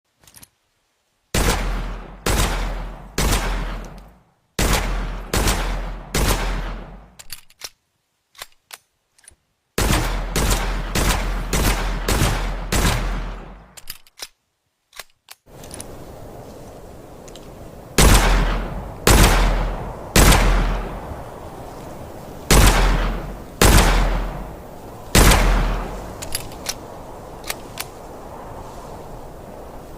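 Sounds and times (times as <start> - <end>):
steady hiss: 0.1 - 29.9
revolver gunshots: 1.4 - 4.0, 4.6 - 7.1, 9.8 - 13.6, 18.0 - 21.3, 22.5 - 26.2.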